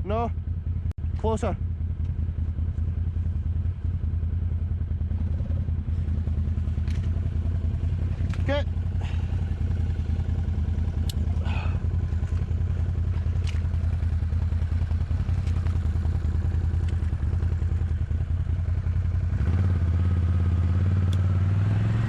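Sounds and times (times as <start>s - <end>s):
atv engine idling: 0.0s - 21.4s
sharp clicks: 11.0s - 11.3s.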